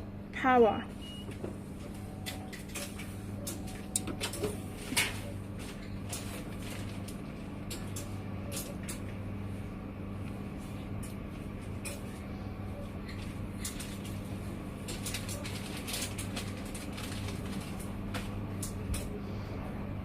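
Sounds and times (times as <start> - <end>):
machine humming: 0.0 - 20.0.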